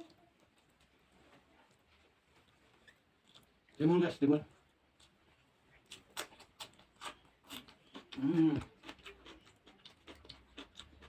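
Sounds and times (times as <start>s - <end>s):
crunching cucumber: 4.9s - 11.0s.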